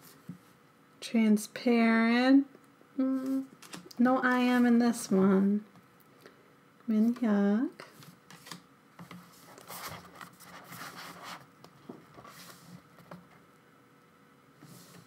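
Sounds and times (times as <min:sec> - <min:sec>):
paper rustling: 0:07.9 - 0:13.2.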